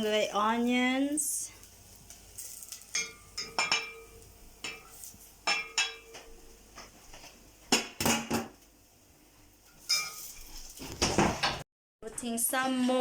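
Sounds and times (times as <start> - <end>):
metal cookware clinking: 2.4 - 6.9, 9.6 - 11.6.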